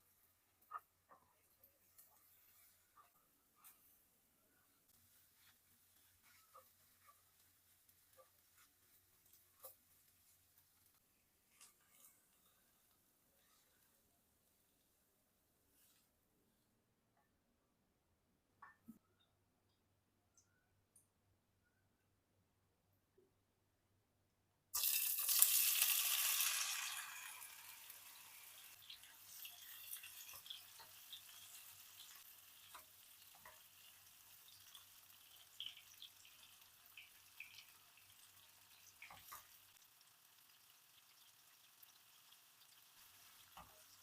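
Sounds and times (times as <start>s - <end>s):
crackles and pops of frying: 0.0s - 3.9s, 4.9s - 13.6s, 24.7s - 44.0s
food sizzling in hot oil: 24.8s - 44.0s.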